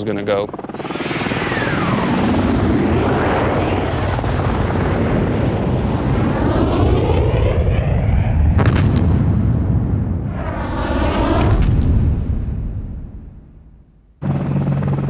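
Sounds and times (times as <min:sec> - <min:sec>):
helicopter flying past: 0:00.0 - 0:08.6, 0:10.0 - 0:13.6, 0:14.2 - 0:15.0
sharp crack: 0:02.7 - 0:14.0.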